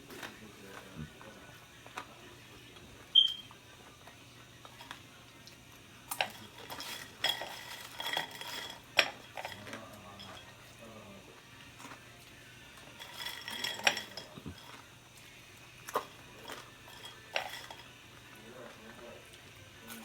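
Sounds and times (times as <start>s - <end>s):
metal utensil clinking on pot: 6.1s - 10.6s, 12.8s - 14.9s, 15.9s - 18.0s.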